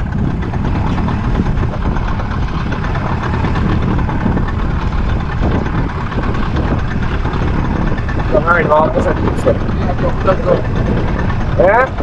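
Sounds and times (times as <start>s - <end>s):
boat engine rumbling: 0.0s - 12.0s.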